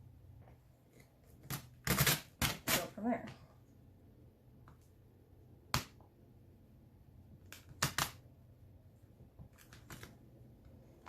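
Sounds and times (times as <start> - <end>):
vinyl film snapping and crackling: 7.4 - 8.3, 9.4 - 10.2.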